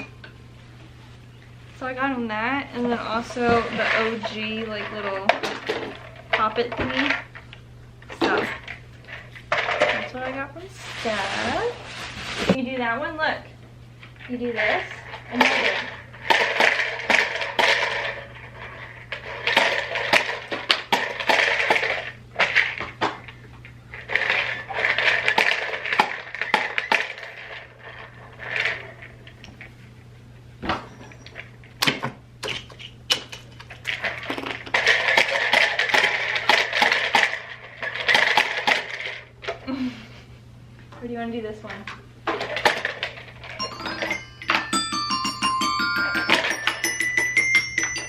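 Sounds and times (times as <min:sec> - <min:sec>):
faint electrical hum: 0:00.0 - 0:48.0
paper and plastic rustling: 0:10.6 - 0:12.7.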